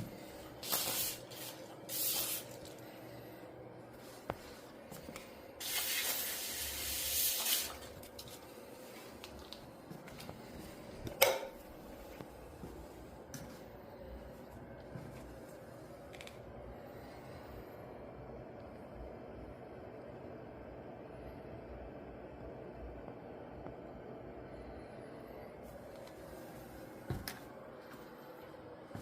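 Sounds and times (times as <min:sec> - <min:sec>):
spray hissing: 0:00.6 - 0:02.6, 0:05.6 - 0:07.9.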